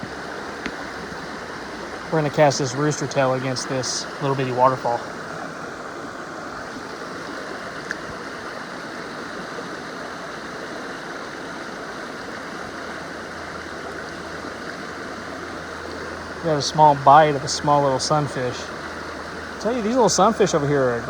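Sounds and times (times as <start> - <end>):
small waterfall running: 0.0 - 21.0
faint click: 7.8 - 8.2.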